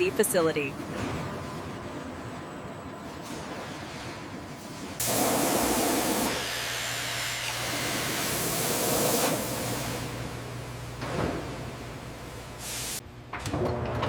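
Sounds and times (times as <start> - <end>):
loud steady hiss: 5.0 - 10.2.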